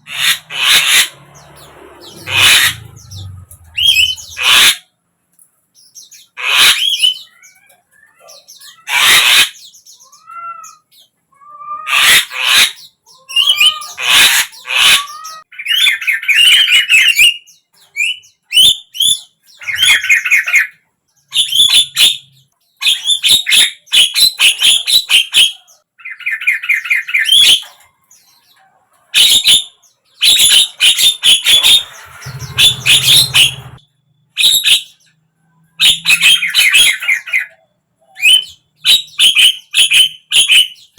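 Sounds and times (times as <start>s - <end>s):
bird screeching and chattering: 0.0s - 4.9s, 6.1s - 10.8s, 11.4s - 17.3s, 19.0s - 20.7s, 29.2s - 33.8s.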